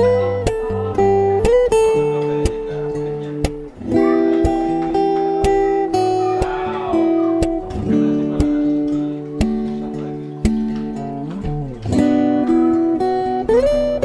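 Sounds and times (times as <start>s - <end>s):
acoustic guitar chords: 0.0s - 14.0s
soft tapping beat: 0.0s - 14.0s.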